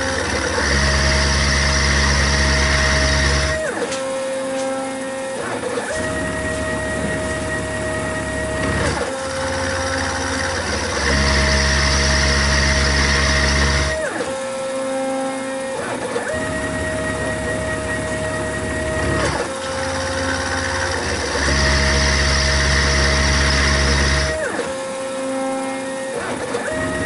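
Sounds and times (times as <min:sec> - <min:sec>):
milling machine whining: 0:00.0 - 0:27.0
deep machine hum: 0:06.0 - 0:14.0, 0:16.3 - 0:24.5.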